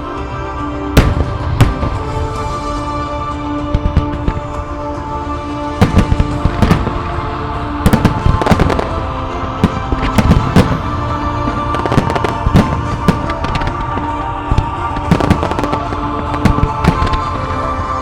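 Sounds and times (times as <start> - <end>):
music playing: 0.0 - 18.0
fireworks bursting: 5.8 - 7.2, 7.8 - 17.7.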